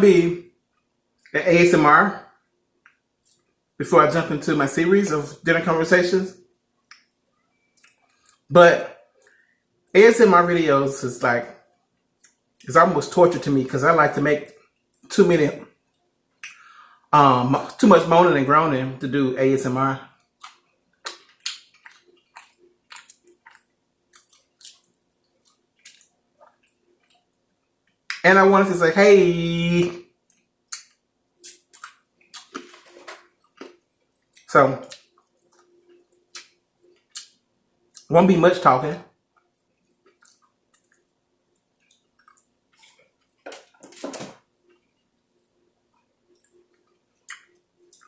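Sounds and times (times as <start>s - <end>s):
faint steady hum: 0.0s - 48.0s
person chewing food: 6.5s - 8.5s, 20.1s - 28.2s, 30.1s - 38.1s, 39.2s - 48.0s.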